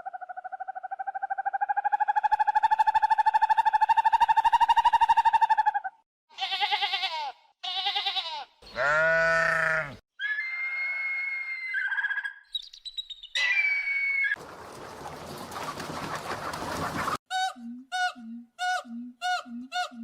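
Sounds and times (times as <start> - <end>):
high steady animal calls: 0.0 - 6.0
goat bleating: 6.3 - 10.0.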